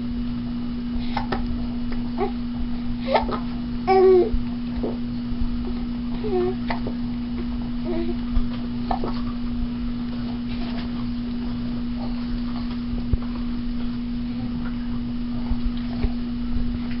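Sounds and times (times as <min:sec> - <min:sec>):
steady hum: 0:00.0 - 0:17.0.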